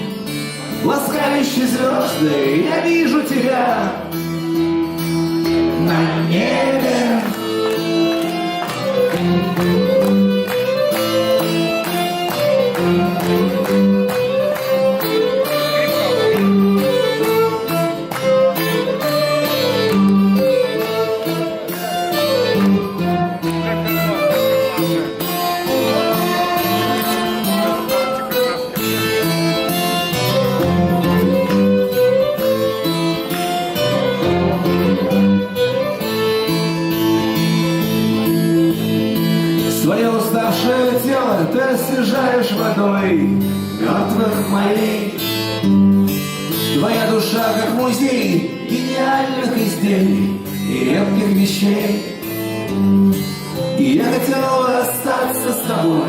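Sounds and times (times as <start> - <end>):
acoustic guitars strumming chords: 0.0 - 56.0
violin playing melody: 4.2 - 39.4.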